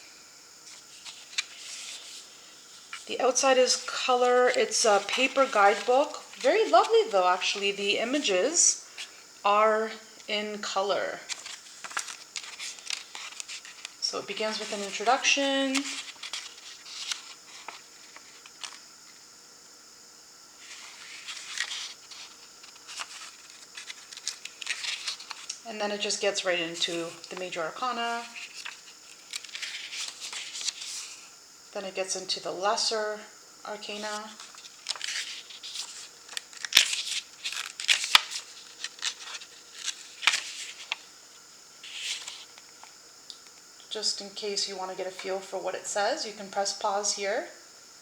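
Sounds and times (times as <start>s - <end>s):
paper pages turning: 0.6s - 9.2s, 10.6s - 18.8s, 20.6s - 31.3s, 33.9s - 41.1s, 41.8s - 42.9s
paper snaps: 34.4s - 41.0s.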